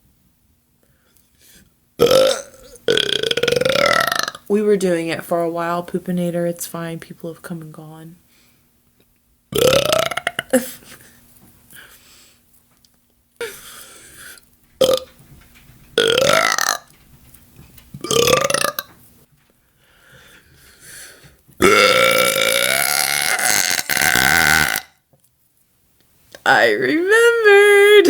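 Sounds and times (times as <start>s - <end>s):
person burping: 2.0s - 4.4s, 9.6s - 10.9s, 14.8s - 15.1s, 16.0s - 16.8s, 18.0s - 18.9s, 21.6s - 25.0s.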